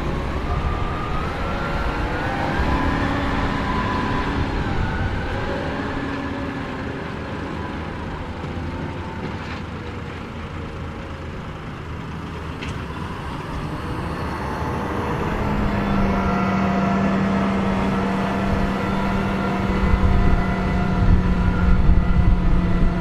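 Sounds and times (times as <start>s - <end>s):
tractor diesel engine running: 0.0s - 23.0s.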